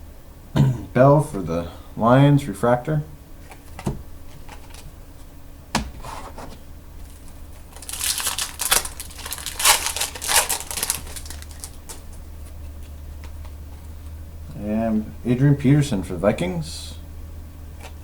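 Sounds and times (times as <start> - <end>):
steady low hum: 0.0 - 18.0
packaging rustling and crinkling: 7.1 - 12.2.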